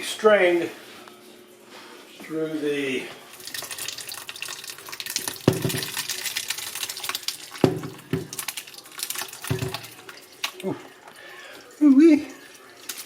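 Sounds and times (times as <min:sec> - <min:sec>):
liquid trickling and splashing: 0:03.3 - 0:13.0.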